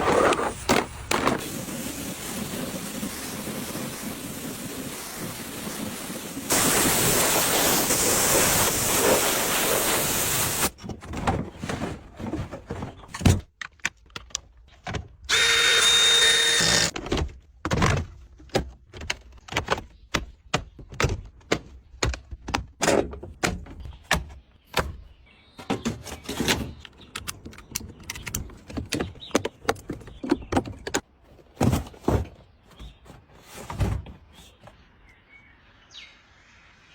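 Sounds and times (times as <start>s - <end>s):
spray hissing: 1.4s - 10.7s
power tool whine: 15.3s - 16.9s.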